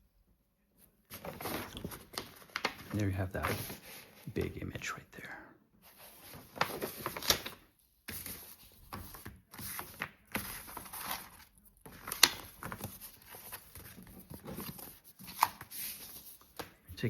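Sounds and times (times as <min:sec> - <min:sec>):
paper and cardboard rustling: 0:01.1 - 0:04.5, 0:05.8 - 0:17.0.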